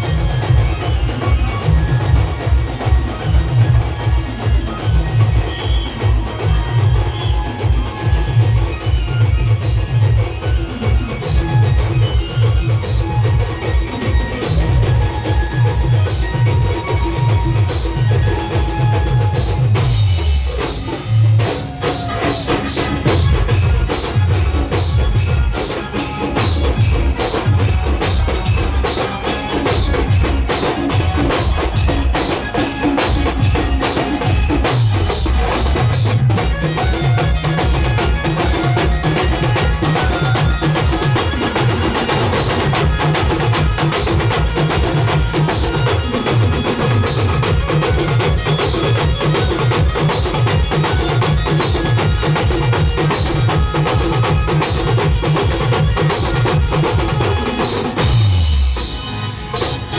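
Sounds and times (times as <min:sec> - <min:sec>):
fast dense drumming: 0:00.0 - 0:59.0.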